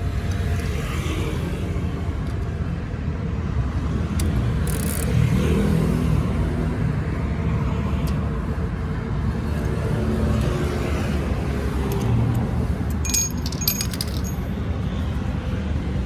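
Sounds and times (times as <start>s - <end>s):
metal parts clinking: 11.8s - 14.6s.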